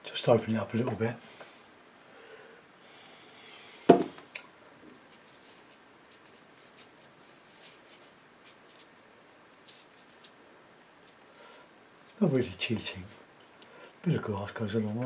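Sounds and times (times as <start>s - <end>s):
object knocking on table: 3.9s - 4.2s
brush ticks and scratches: 9.6s - 10.4s.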